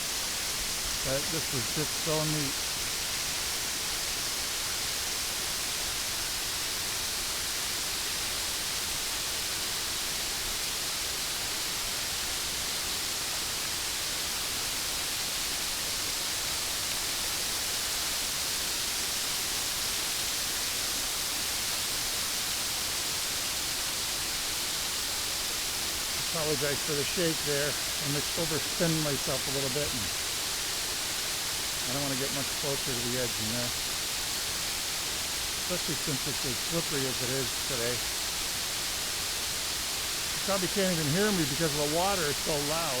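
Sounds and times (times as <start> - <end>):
loud waterfall rushing: 0.0 - 5.2, 25.2 - 43.0.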